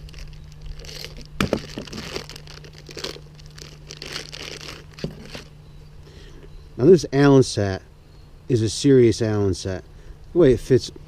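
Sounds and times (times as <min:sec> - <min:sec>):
tool set rustling and crinkling: 0:00.0 - 0:05.5.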